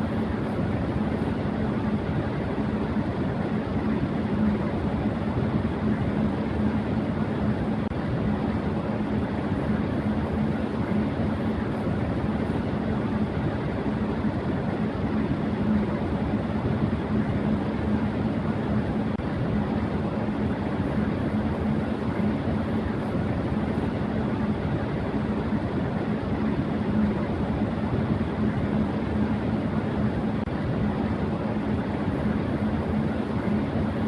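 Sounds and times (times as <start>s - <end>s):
electric fan running: 0.0s - 34.0s.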